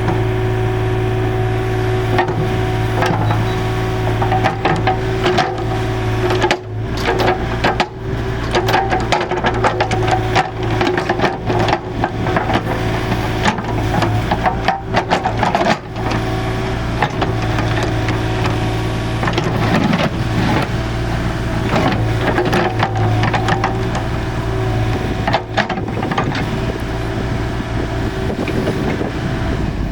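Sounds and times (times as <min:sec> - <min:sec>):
excavator diesel engine running: 0:00.0 - 0:29.9
clicks and knocks: 0:02.1 - 0:16.3.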